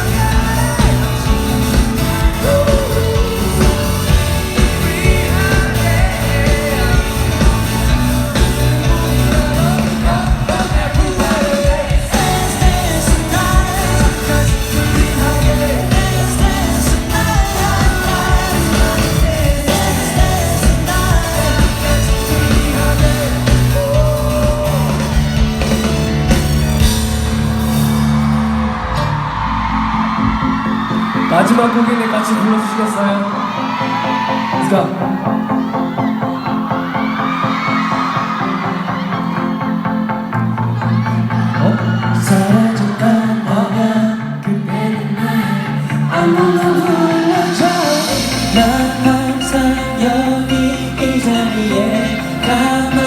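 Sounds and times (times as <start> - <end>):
person singing lead vocal: 0.0 - 26.6, 30.2 - 53.0
pop-rock band playing: 0.0 - 53.0.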